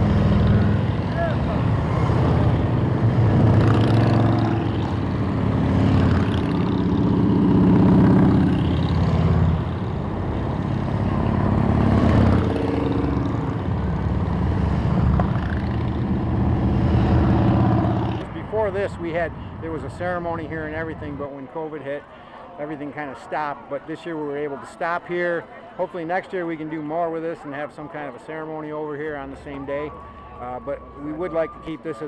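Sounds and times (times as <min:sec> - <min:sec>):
motorcycles riding past: 0:00.0 - 0:21.2.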